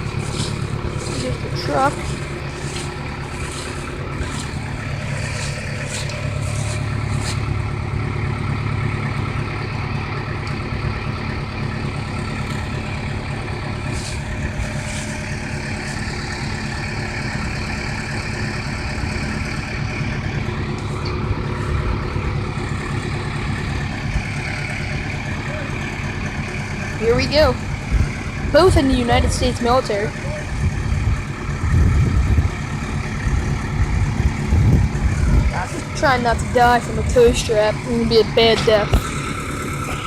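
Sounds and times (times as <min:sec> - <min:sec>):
truck engine running: 0:00.0 - 0:40.0.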